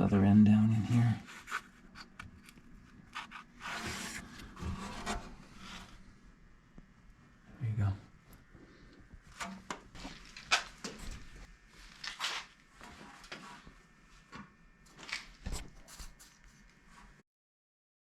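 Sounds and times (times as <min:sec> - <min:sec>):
scraping and rustling strokes: 0:00.9 - 0:06.1, 0:09.2 - 0:13.8, 0:14.9 - 0:17.2.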